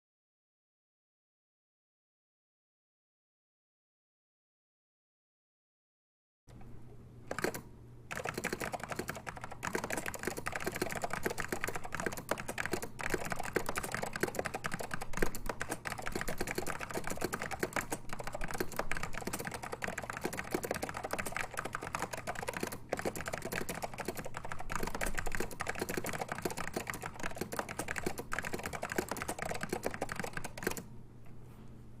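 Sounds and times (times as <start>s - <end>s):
fast typing key clicks: 7.3s - 30.9s.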